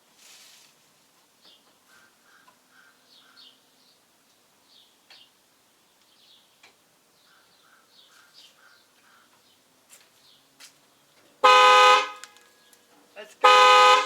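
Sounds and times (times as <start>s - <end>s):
faint birds chirping: 1.3s - 11.5s, 12.3s - 13.4s
car horn blast: 11.4s - 12.2s, 13.4s - 14.0s.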